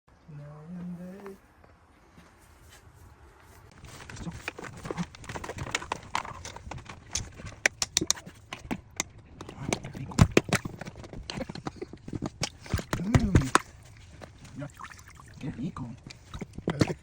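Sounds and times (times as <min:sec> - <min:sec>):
sharp knocks and clicks: 0:03.8 - 0:14.5.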